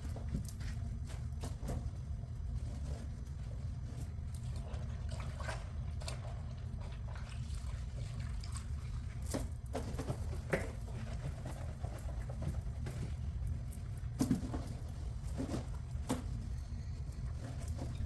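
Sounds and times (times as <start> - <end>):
wet scrubbing with cloth: 4.1 - 9.3.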